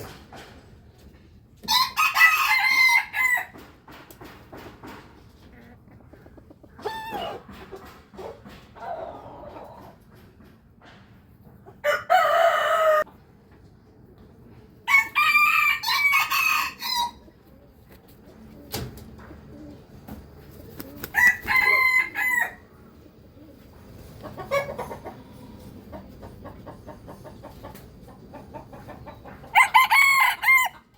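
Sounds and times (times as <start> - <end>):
roosters crowing: 1.6 - 3.7, 6.7 - 7.5, 11.8 - 13.1, 14.8 - 17.3, 21.0 - 22.8, 29.5 - 30.9.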